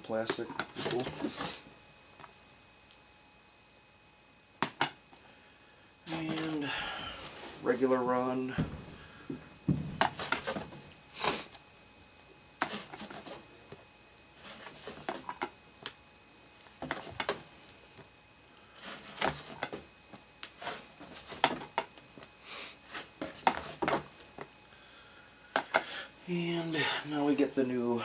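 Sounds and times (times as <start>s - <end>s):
plastic discs clacking: 8.6s - 11.0s.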